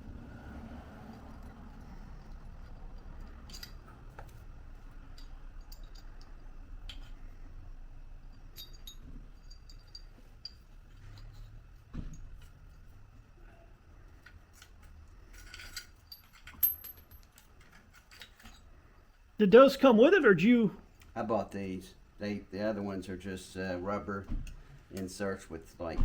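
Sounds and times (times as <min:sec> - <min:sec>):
low steady hum: 0:00.0 - 0:25.8
metallic clinks of hand tools: 0:03.0 - 0:03.9, 0:08.4 - 0:11.6.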